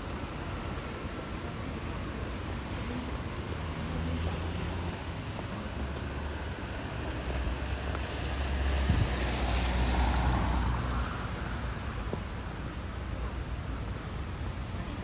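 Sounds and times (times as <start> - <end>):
car tyres hissing on wet road: 6.2 - 11.9.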